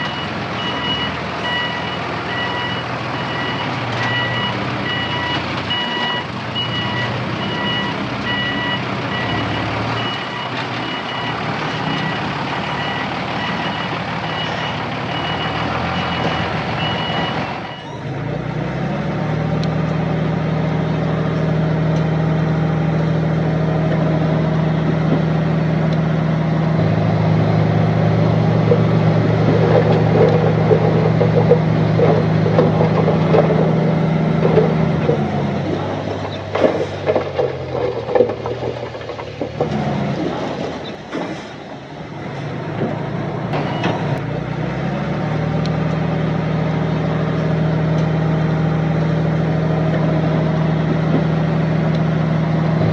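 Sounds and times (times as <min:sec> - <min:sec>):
back-up alarm beeping: 0:00.0 - 0:18.0
construction vehicle engine: 0:00.0 - 0:52.9.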